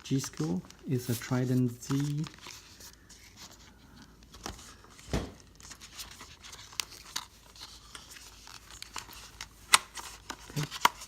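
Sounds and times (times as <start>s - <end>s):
packaging crinkling: 0.0s - 11.0s
loud knock: 5.1s - 5.4s.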